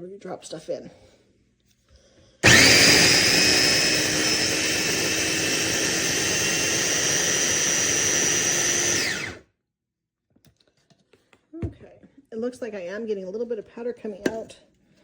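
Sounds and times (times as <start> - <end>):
food chopper motor whining: 2.4 - 9.4.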